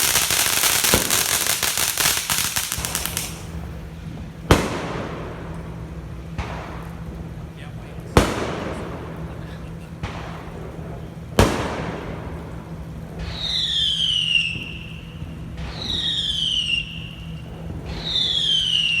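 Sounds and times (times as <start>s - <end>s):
whistling fireworks shrieking: 0.0s - 3.7s, 13.2s - 19.0s
firecracker bang: 0.0s - 7.2s, 8.2s - 13.5s.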